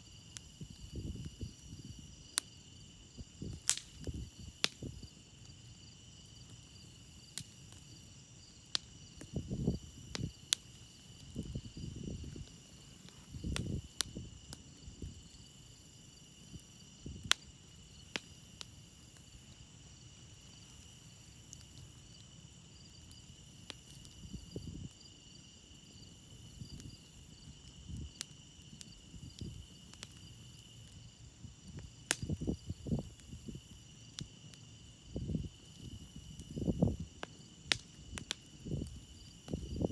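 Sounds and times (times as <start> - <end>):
campfire crackling: 0.0 - 39.9
crickets chirping: 0.0 - 39.9
fire pops: 0.4 - 5.6, 6.4 - 15.6, 16.4 - 19.4, 27.8 - 39.9.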